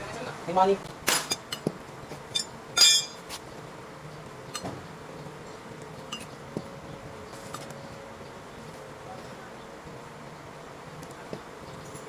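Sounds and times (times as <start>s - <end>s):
metal tools clinking: 2.3s - 3.2s.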